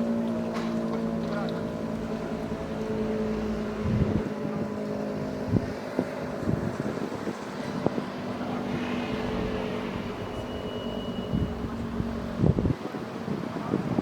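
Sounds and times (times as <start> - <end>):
distant motor siren steady tone: 0.0 - 13.1
wind thumping on microphone: 11.3 - 14.0.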